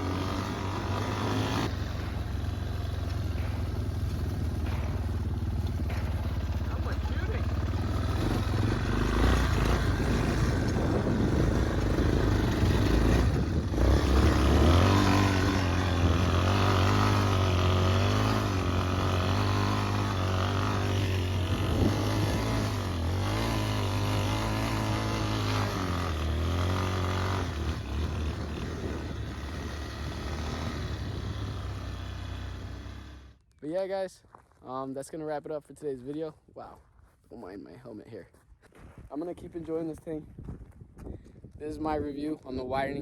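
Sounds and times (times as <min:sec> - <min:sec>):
atv engine revving: 0:00.0 - 0:33.4.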